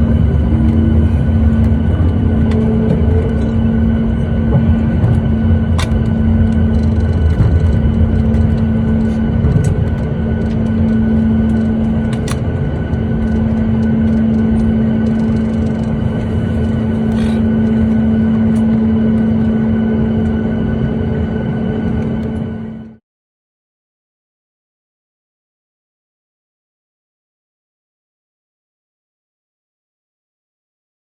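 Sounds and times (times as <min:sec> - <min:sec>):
airplane cabin engine drone: 0:00.0 - 0:23.0.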